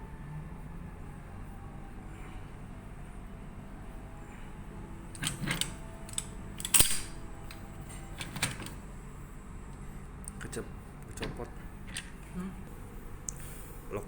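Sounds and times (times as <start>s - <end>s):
metal parts clinking: 5.2s - 8.8s, 11.9s - 12.1s
loud metallic clank: 6.6s - 7.3s.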